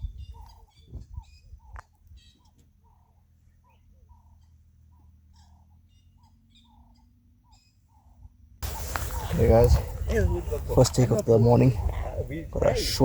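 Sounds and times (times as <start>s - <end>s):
high bird chirps: 0.0s - 10.1s
low repeating bird call: 0.0s - 12.9s.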